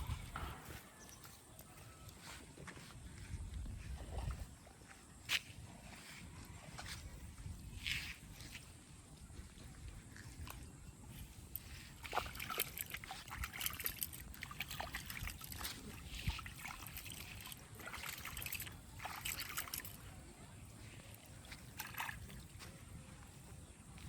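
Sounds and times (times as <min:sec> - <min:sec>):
muddy water sloshing: 0:00.0 - 0:24.0
small water splashes: 0:09.5 - 0:23.4.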